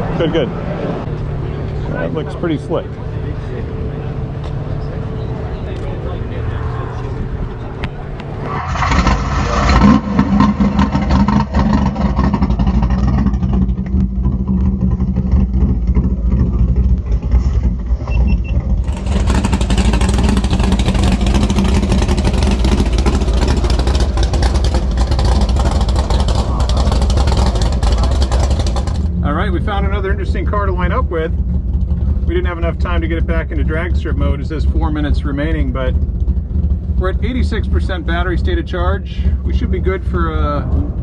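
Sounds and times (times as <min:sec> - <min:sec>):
car engine idling: 0:00.0 - 0:41.0.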